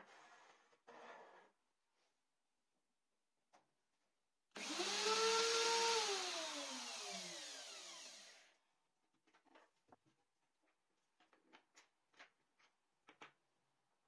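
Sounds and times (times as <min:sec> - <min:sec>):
small electric motor whining: 0:04.6 - 0:08.5.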